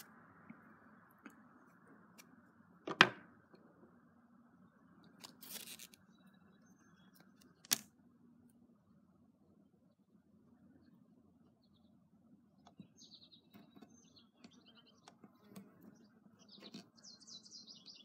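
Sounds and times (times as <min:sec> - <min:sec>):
masking tape tearing: 0:05.2 - 0:06.0.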